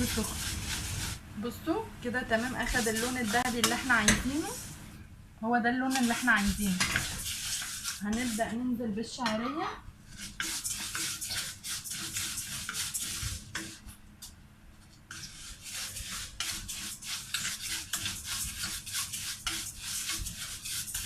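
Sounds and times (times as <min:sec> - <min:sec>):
spoon scraping rice in pot: 0:00.0 - 0:01.2, 0:02.3 - 0:04.7, 0:05.9 - 0:08.6, 0:10.1 - 0:13.9, 0:15.1 - 0:21.0.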